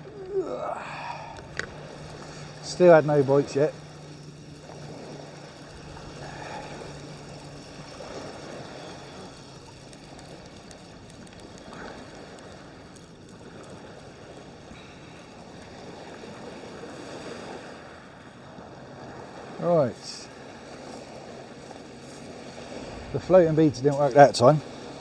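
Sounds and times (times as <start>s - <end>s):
small waves washing onto beach: 0.0s - 25.0s
wind on microphone: 22.6s - 24.1s.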